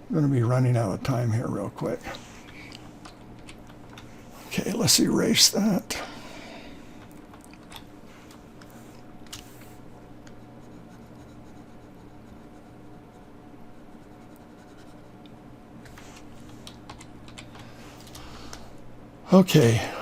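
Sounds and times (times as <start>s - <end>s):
low electrical hum: 0.0s - 20.0s
stylus scratching on tablet: 9.5s - 15.2s.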